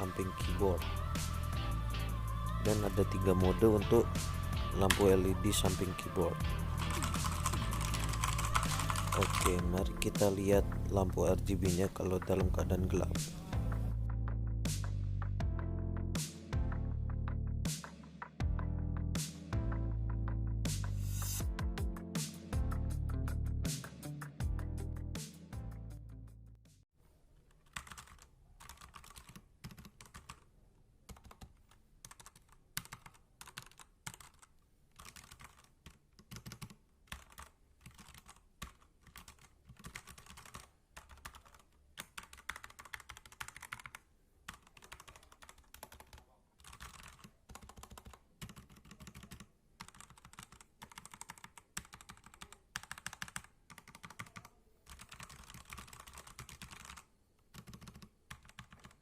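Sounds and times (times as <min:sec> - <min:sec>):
mechanical keyboard typing: 0:04.8 - 0:10.5, 0:27.5 - 0:30.4, 0:31.1 - 0:59.0.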